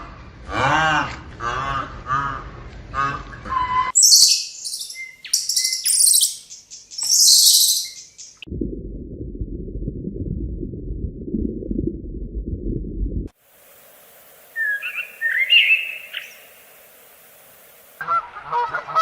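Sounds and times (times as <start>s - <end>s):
small bird chirping and trilling: 4.0s - 8.4s, 14.6s - 16.5s
low steady rumbling: 8.4s - 13.3s.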